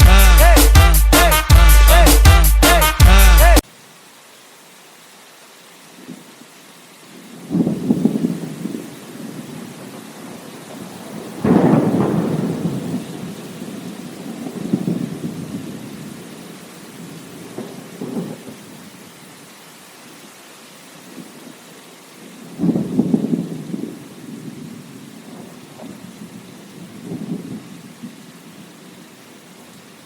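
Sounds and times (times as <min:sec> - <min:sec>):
steady rain: 0:03.6 - 0:30.0
loud thunderclap: 0:07.5 - 0:08.8, 0:10.8 - 0:15.8, 0:22.6 - 0:24.6
rolling thunder: 0:07.5 - 0:16.2, 0:22.5 - 0:27.6.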